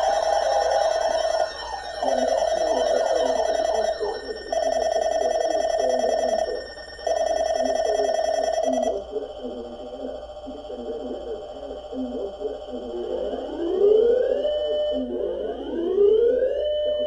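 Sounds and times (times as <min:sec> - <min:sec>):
tv programme audio: 0:00.0 - 0:13.6
emergency alert tone beeping: 0:00.0 - 0:15.1.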